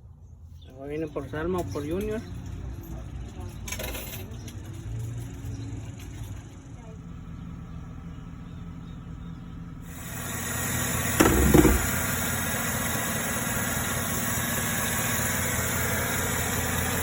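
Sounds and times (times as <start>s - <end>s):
engine idling: 7.1s - 17.0s.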